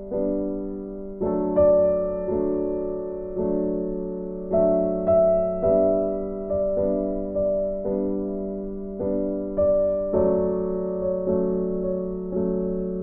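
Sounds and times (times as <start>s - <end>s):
soft piano chords: 0.0s - 13.0s.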